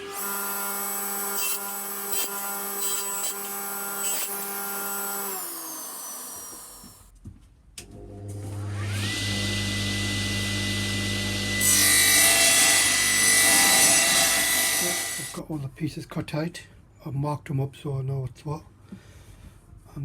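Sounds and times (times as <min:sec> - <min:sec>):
electric power tool running: 0:00.0 - 0:07.0, 0:08.2 - 0:11.6.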